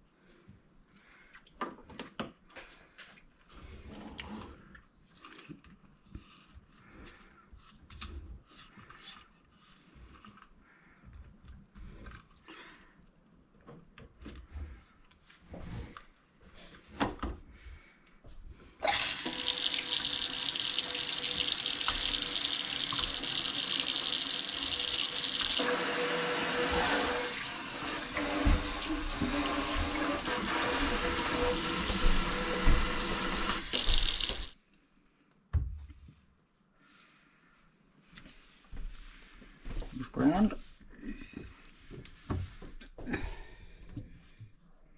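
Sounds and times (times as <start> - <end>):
faucet running water into sink: 18.8 - 34.6.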